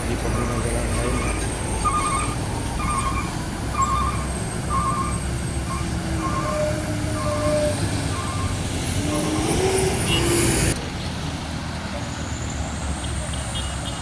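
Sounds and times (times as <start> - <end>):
heavy vehicle engines running: 0.0 - 14.0
reversing alarm beeping: 0.2 - 10.3.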